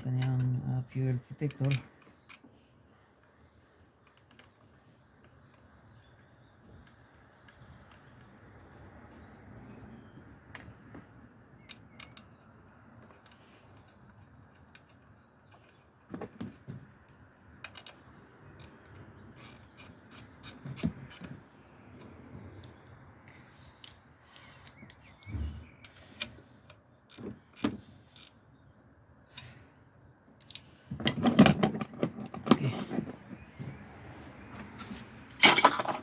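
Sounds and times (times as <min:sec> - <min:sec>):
hand tools clicking and knocking: 0:11.6 - 0:23.0, 0:23.8 - 0:25.3, 0:26.2 - 0:28.4, 0:30.4 - 0:33.4, 0:35.3 - 0:36.0.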